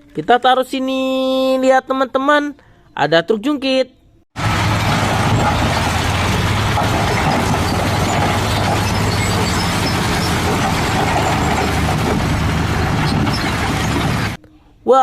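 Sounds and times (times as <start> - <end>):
truck diesel engine rumbling: 4.4 - 14.4.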